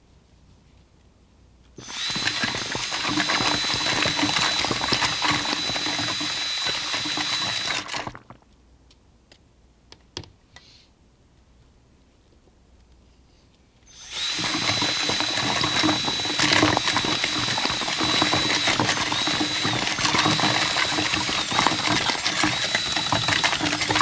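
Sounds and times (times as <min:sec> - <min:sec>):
power drill motor whine: 0:01.8 - 0:08.3, 0:13.9 - 0:24.0
dense rattle of mixing: 0:01.8 - 0:08.4, 0:14.0 - 0:24.0.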